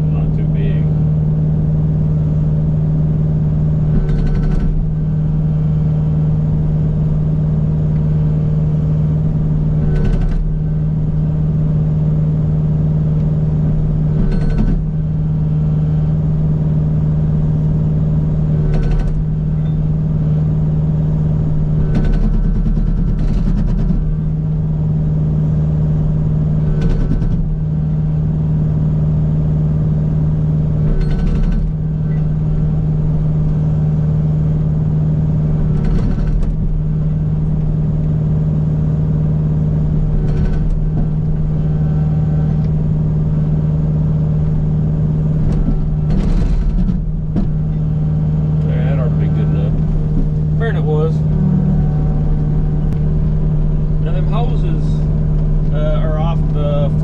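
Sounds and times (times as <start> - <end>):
diesel engine running under load: 0.0 - 57.0
hydraulic hammer breaking rock: 3.9 - 4.9, 9.8 - 10.5, 14.1 - 14.9, 21.8 - 24.1, 26.6 - 27.6.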